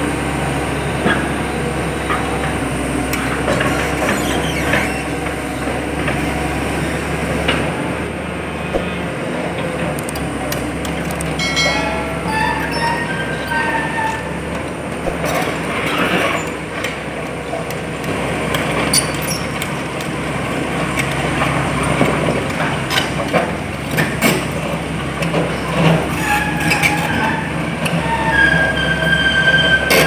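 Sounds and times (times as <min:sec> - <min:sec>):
excavator running: 0:00.0 - 0:30.0
short squeals: 0:03.5 - 0:05.2, 0:11.4 - 0:16.6, 0:26.1 - 0:30.0
metallic knocks: 0:11.3 - 0:15.2.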